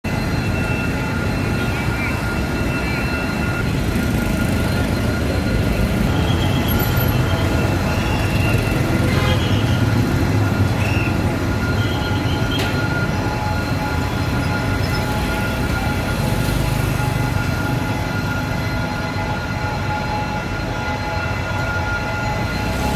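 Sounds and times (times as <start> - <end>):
train wheels rumbling on rails: 0.0 - 22.9.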